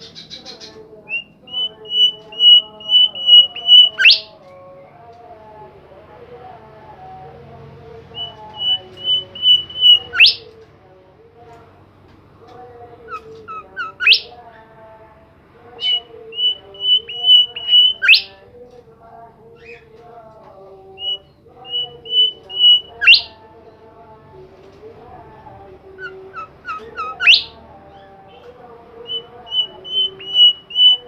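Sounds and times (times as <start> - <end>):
songbird singing loud phrase: 0.0 - 4.8, 8.1 - 10.6, 13.0 - 14.7, 15.7 - 18.5, 20.9 - 23.8, 25.9 - 31.0.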